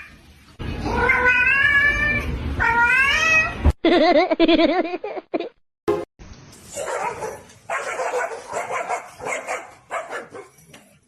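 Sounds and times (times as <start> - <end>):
cat yowling: 0.8 - 3.6.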